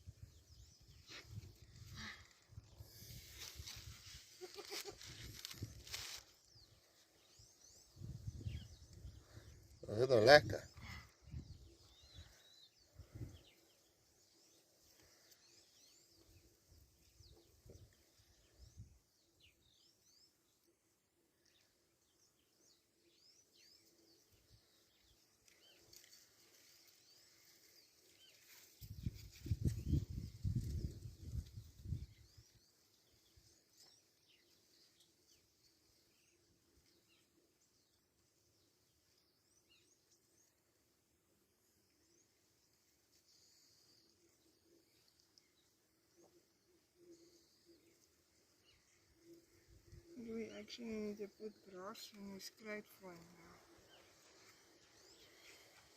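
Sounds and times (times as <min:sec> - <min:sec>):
faint birds chirping: 0:00.0 - 0:55.9.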